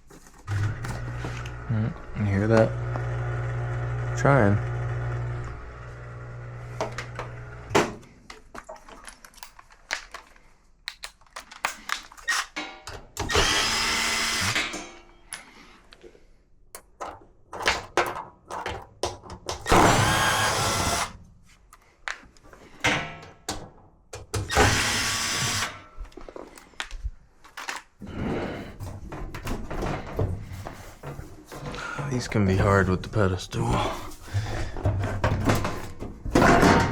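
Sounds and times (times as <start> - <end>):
cordless drill running: 0.5 - 7.8, 13.2 - 14.6, 19.7 - 21.2, 24.5 - 25.8
parts clattering: 6.7 - 13.6, 16.8 - 19.9, 26.0 - 36.9.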